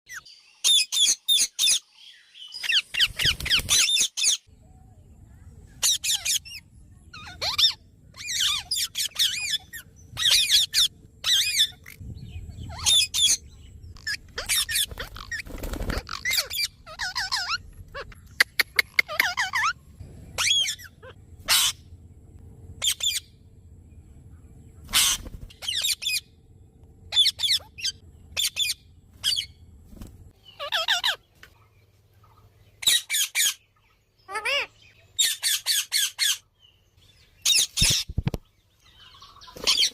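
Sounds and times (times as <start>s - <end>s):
parakeets squawking: 5.8s - 6.6s, 7.2s - 19.8s, 20.4s - 21.9s, 22.8s - 23.3s, 24.9s - 26.3s, 27.1s - 29.6s, 30.4s - 31.3s, 32.8s - 36.4s, 39.2s - 39.9s.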